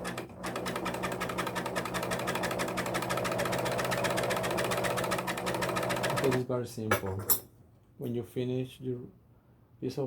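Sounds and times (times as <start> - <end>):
serger stitching fabric: 0.0 - 6.4.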